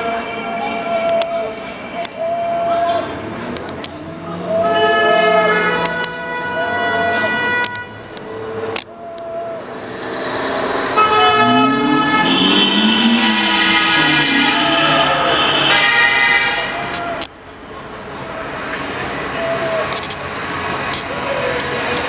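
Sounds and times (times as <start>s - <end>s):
people shouting: 2.1s - 3.1s
car horns blowing: 4.5s - 8.2s, 10.8s - 17.0s
vuvuzelas: 11.0s - 16.9s.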